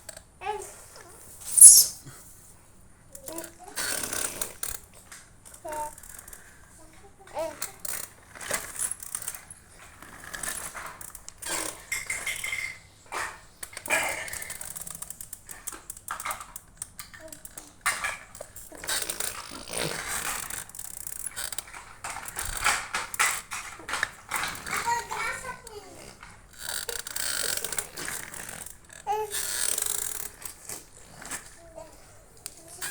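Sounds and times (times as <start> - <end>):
baby high squeaks: 1.5 - 2.0
baby making motorbike mouth noises: 29.0 - 29.9.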